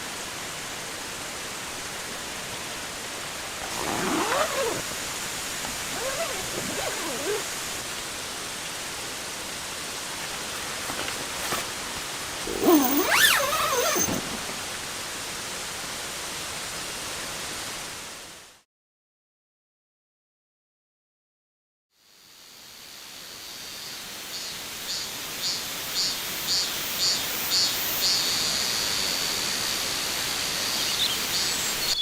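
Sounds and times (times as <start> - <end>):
rain hissing: 0.7 - 16.6
wavering animal cries: 5.7 - 7.5, 12.5 - 14.1.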